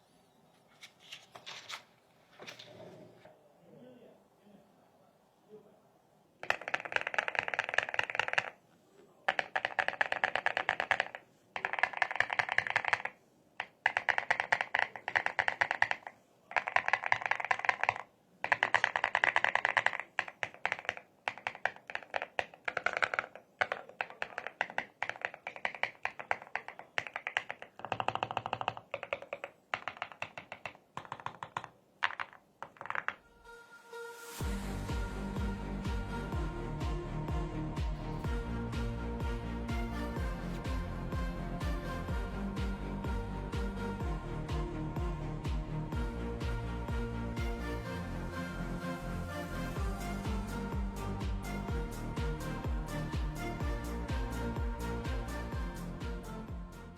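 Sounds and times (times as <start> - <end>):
mechanical keyboard typing: 6.4 - 8.6, 9.3 - 33.2.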